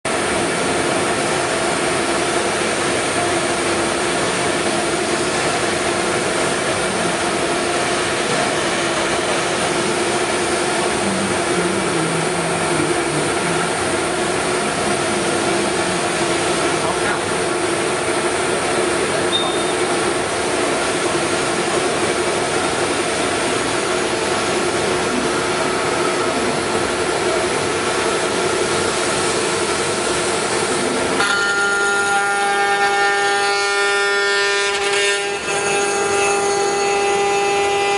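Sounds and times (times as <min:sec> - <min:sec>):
cnc router machining: 0:00.1 - 0:37.9
spindle tonal hum: 0:06.4 - 0:17.2.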